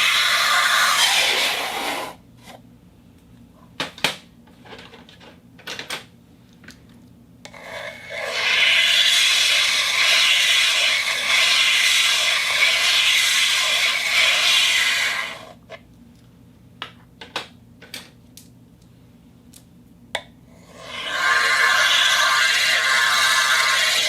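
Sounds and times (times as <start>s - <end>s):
turntable hissing rush: 0.0s - 2.2s, 8.1s - 15.6s, 20.7s - 24.0s.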